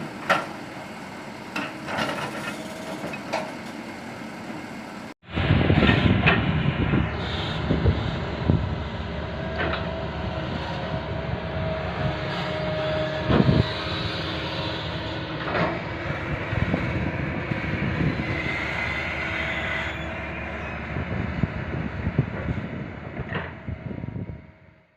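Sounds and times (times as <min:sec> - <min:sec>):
excavator diesel engine rumbling: 0:00.0 - 0:24.8
high squeals: 0:18.0 - 0:21.4.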